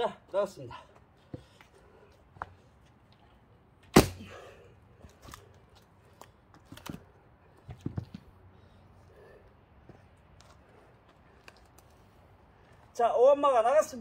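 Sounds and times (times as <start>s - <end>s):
axe striking a log: 3.9s - 4.3s.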